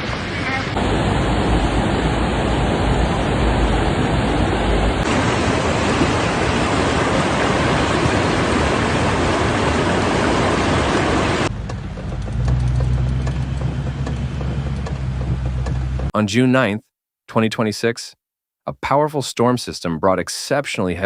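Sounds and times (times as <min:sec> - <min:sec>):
heavy water rushing: 0:00.0 - 0:11.5.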